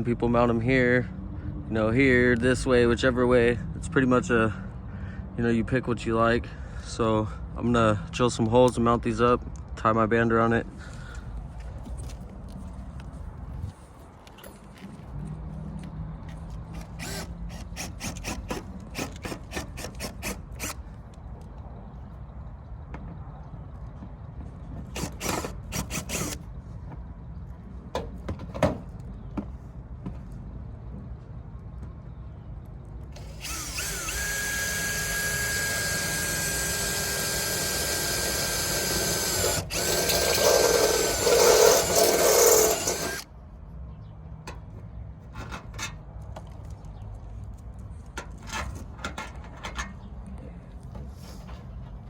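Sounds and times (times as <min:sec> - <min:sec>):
power drill whining: 0:16.8 - 0:20.8, 0:24.9 - 0:26.4, 0:33.2 - 0:43.3.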